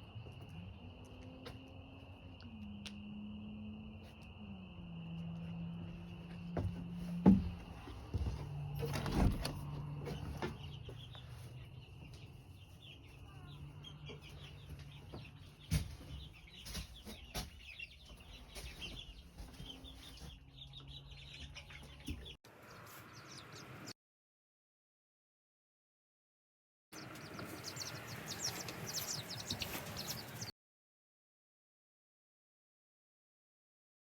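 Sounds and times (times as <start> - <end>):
chickens clucking: 9.6 - 23.7, 27.0 - 30.5.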